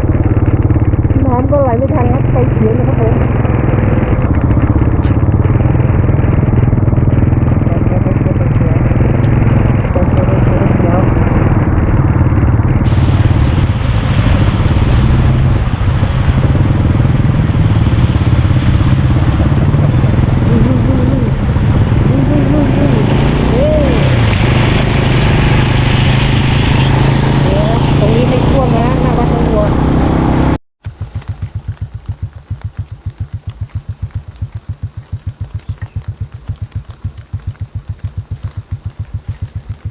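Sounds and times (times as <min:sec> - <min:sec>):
motorcycle engine running: 0:00.0 - 0:39.9
rushing hiss: 0:12.8 - 0:19.4.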